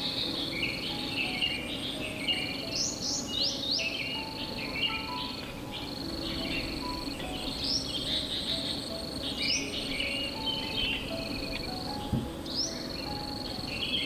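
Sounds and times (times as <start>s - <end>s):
songbird singing: 0.0s - 14.0s
soft low knock: 11.9s - 12.4s.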